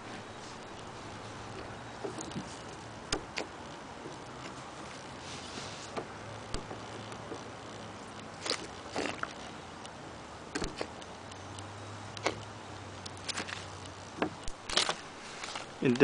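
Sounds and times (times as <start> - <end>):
faint knocks and rustles: 0.0 - 9.6
low steady hum: 0.0 - 16.0.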